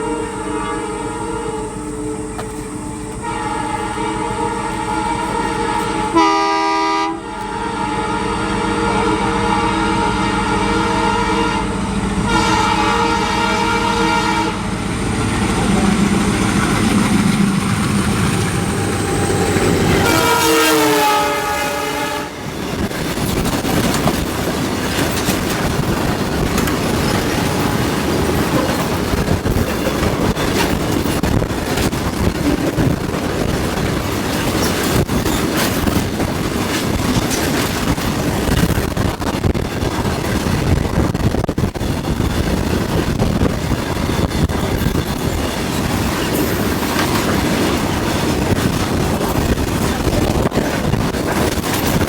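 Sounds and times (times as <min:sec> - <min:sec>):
diesel locomotive horn blasts: 0:00.0 - 0:14.8, 0:15.6 - 0:22.6
freight wagons clattering over rails: 0:22.4 - 0:52.0.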